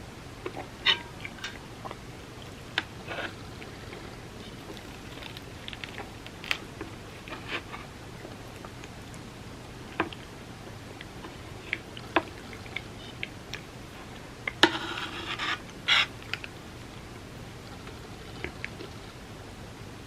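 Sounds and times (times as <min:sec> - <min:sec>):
food crunching: 0:00.4 - 0:10.3
crackly chewing: 0:00.4 - 0:14.6, 0:15.3 - 0:19.3.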